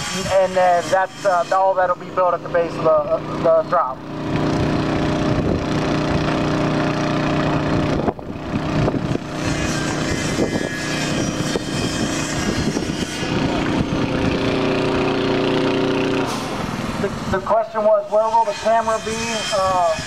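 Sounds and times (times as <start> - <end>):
motor humming: 1.7 - 17.4.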